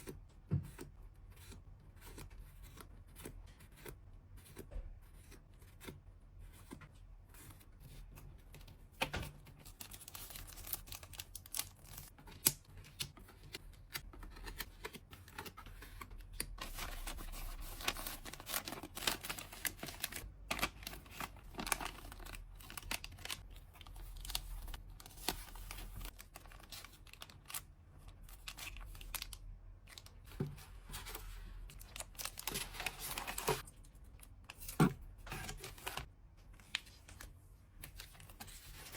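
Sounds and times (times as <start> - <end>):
packing materials crinkling and tearing: 9.6 - 30.2, 31.0 - 38.9.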